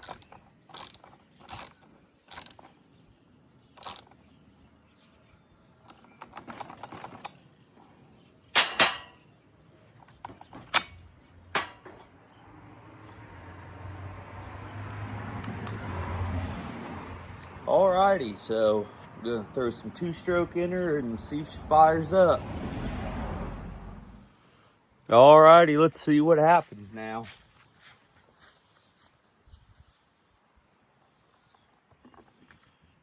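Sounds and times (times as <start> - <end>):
hand ratchet clicking: 0.0 - 2.7, 3.8 - 4.1
metallic clinks of tools: 0.0 - 2.7.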